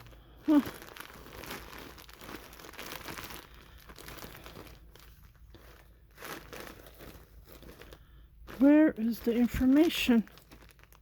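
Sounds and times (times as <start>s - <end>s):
plastic bag crinkling: 0.0s - 11.0s.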